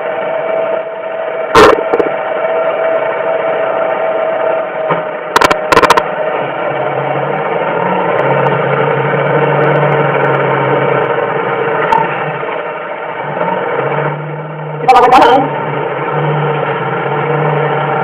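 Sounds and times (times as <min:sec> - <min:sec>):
sharp knocks: 0:01.6 - 0:02.2.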